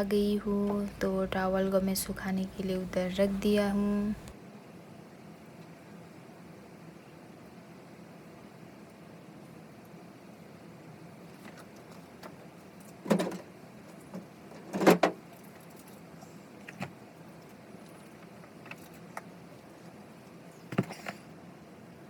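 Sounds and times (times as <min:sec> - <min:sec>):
knocks and clatters of handling: 0:11.4 - 0:15.9.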